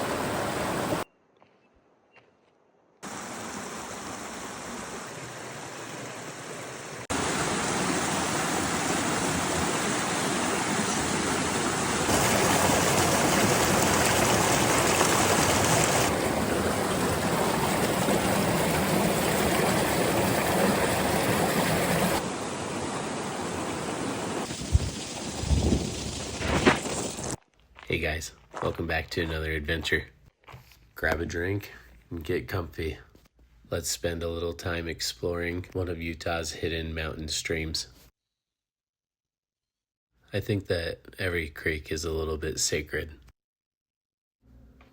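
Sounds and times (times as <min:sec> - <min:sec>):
creek water rushing: 0:00.0 - 0:01.0, 0:03.0 - 0:25.4.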